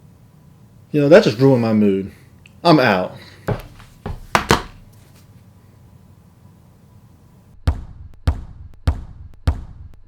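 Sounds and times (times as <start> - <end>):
footsteps on a hard floor: 3.5 - 5.2.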